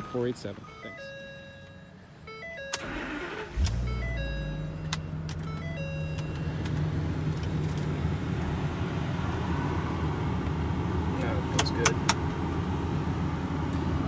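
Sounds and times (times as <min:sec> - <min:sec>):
electronic chime tones: 0:00.0 - 0:06.6.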